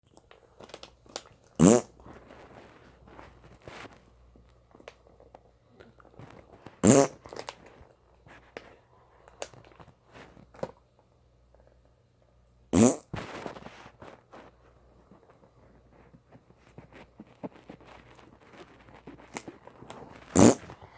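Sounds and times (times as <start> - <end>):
faint clicks and rustles: 0.1 - 12.0, 13.2 - 20.9
fart sounds: 1.6 - 2.2, 6.8 - 7.4, 12.7 - 13.5, 20.2 - 20.8.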